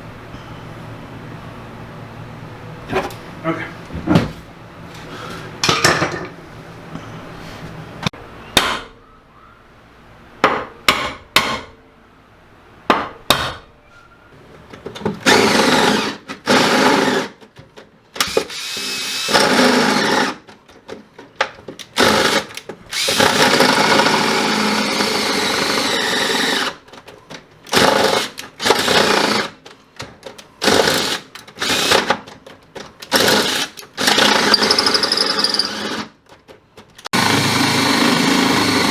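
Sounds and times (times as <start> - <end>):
handheld power tool bursts: 18.2 - 20.5, 21.8 - 26.8, 33.0 - 36.1.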